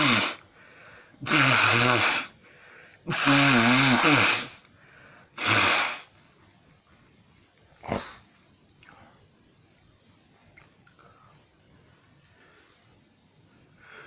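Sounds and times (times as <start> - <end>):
person sneezing: 0.0 - 0.4, 1.2 - 2.4, 3.1 - 4.6, 5.4 - 6.1.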